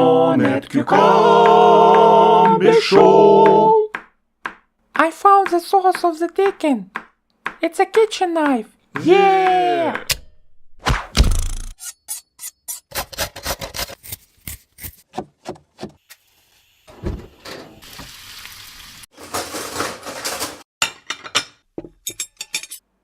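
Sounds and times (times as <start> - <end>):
knife chopping on cutting board: 3.4 - 4.7, 5.4 - 7.7.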